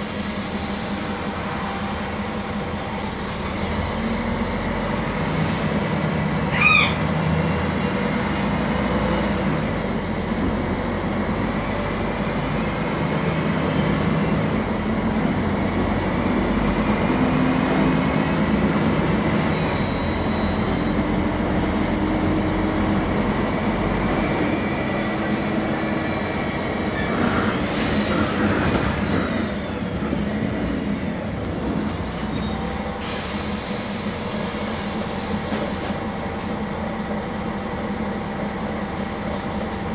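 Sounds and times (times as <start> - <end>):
air hiss: 0.0 - 2.2, 3.0 - 5.6, 32.8 - 36.3
bus diesel engine running: 0.0 - 39.9
short squeal: 6.5 - 7.1.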